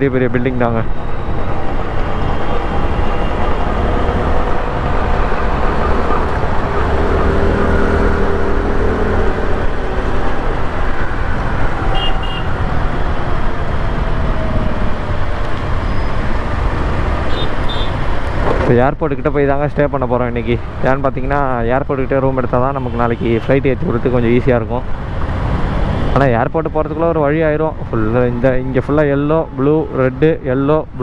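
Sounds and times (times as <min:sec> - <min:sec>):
road traffic noise: 0:00.0 - 0:31.0
wind noise: 0:00.8 - 0:18.7
scooter engine and tyre rumble: 0:01.0 - 0:18.8.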